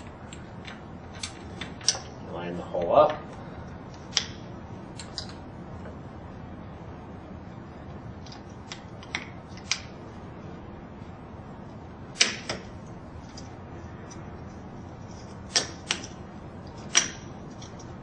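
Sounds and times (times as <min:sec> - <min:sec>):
sharp clicks and knocks of parts: 0:00.0 - 0:02.2, 0:03.9 - 0:04.4, 0:05.0 - 0:06.0, 0:08.2 - 0:10.0, 0:12.2 - 0:13.5, 0:15.4 - 0:18.0
steady low hiss: 0:00.0 - 0:18.0.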